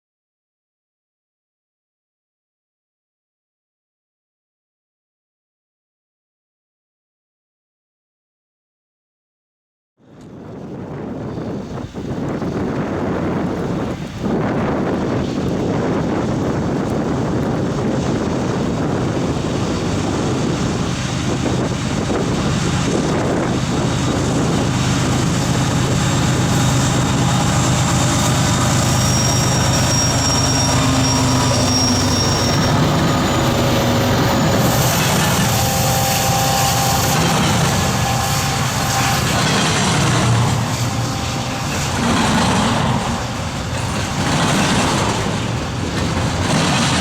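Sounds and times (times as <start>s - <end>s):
freight train rumbling past: 10.1s - 47.0s
thin high whine: 22.8s - 43.8s.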